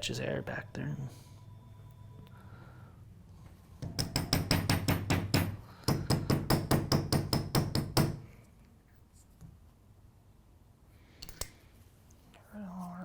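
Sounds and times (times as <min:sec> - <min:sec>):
hair stacker knocking on bench: 0:03.8 - 0:08.2.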